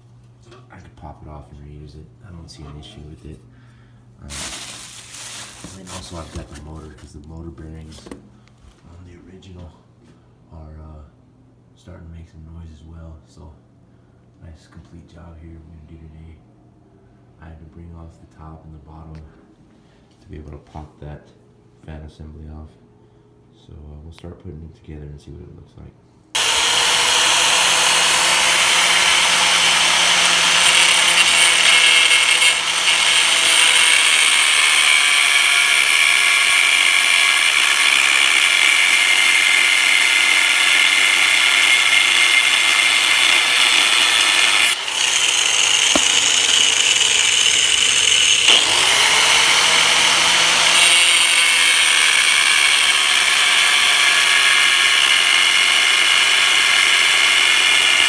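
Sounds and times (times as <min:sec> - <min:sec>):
power tool running: 0:26.4 - 0:58.0.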